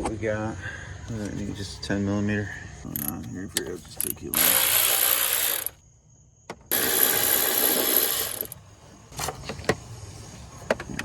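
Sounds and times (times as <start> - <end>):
ratchet rasping: 3.9 - 5.8, 6.7 - 8.6.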